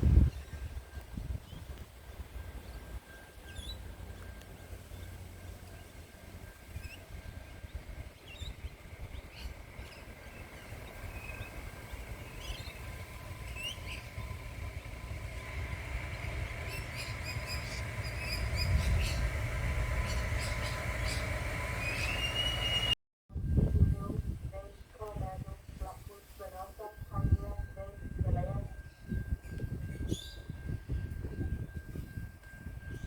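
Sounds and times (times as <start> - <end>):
train rumble: 0.0 - 33.0
high ringing from rails: 0.3 - 23.0, 27.0 - 33.0
birds chirping: 4.9 - 23.0.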